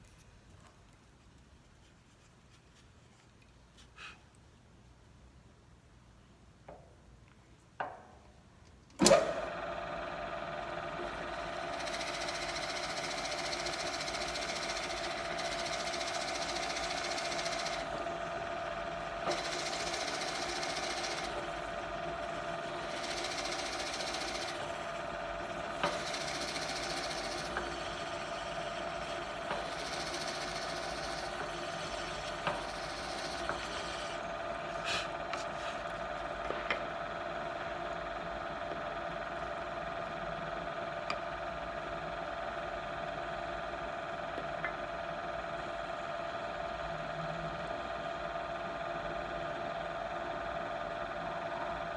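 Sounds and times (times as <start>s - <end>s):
drill press motor whining: 9.0s - 51.9s
drill bit cutting wood: 10.6s - 36.7s.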